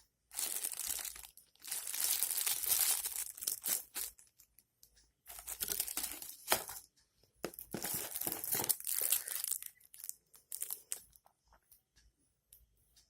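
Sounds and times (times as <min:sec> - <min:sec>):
packaging wrap crinkling: 0:00.3 - 0:04.5, 0:05.3 - 0:11.2.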